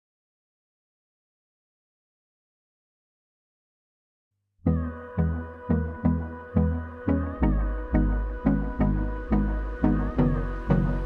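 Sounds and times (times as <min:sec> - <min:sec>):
instrumental background music: 0:04.7 - 0:11.0.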